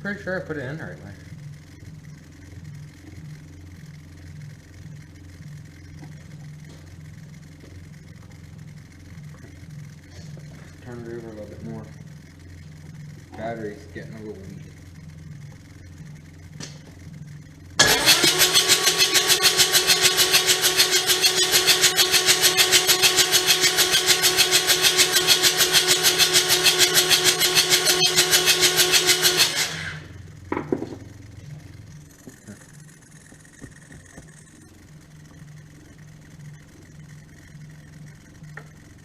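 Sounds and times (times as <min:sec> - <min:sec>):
starter motor cranking diesel: 0:00.0 - 0:37.0.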